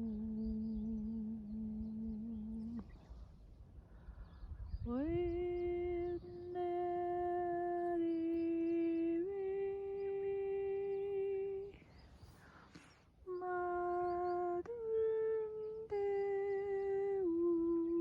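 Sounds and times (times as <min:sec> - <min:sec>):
breath: 0:03.0 - 0:04.5, 0:12.0 - 0:13.2.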